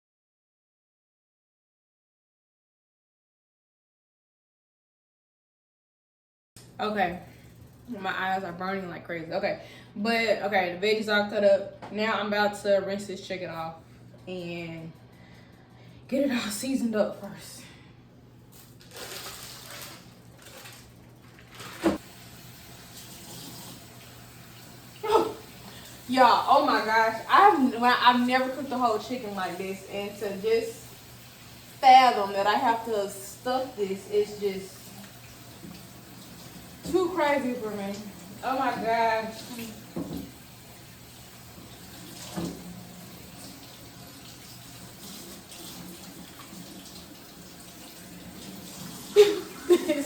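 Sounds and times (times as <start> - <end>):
faucet running into sink: 19.0 - 27.3, 33.6 - 50.0.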